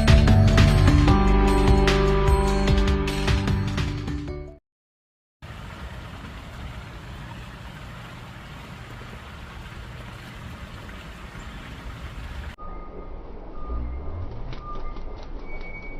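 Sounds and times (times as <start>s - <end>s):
music: 0.0s - 4.6s.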